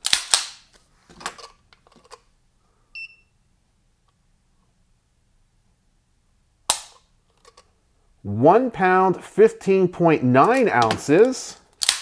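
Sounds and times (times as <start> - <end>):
handling clicks: 10.4 - 12.0.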